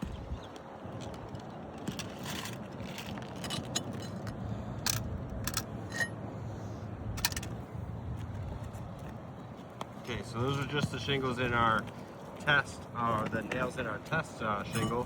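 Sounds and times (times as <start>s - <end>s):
low background noise: 0.0s - 15.0s
metallic clinks and scrapes: 1.9s - 6.2s, 14.7s - 15.0s.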